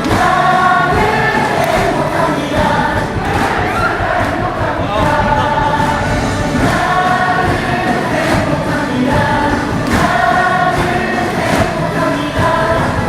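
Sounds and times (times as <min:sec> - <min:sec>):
sharp drum beat: 0:00.0 - 0:13.0
stadium crowd singing: 0:00.0 - 0:13.0.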